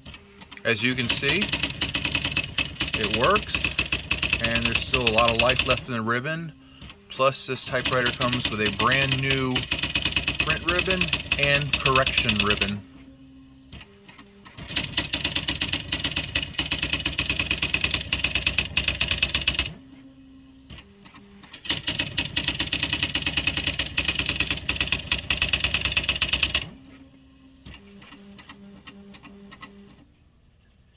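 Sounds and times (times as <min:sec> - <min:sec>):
low whirring of typewriter: 0:00.0 - 0:30.9
typewriter key strikes: 0:07.8 - 0:12.8.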